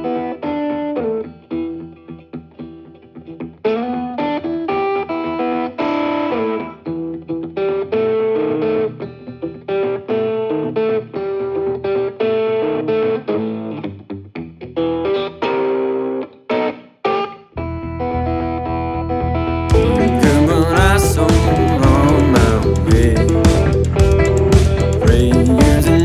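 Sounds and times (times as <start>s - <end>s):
distorted electric guitar blues riff: 0.0s - 26.0s.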